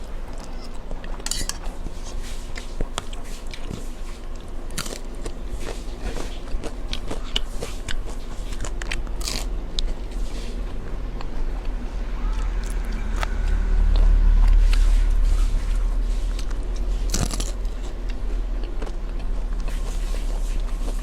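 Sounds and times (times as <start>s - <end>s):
person chewing and crunching: 0.0s - 21.0s
low rumble: 7.3s - 21.0s.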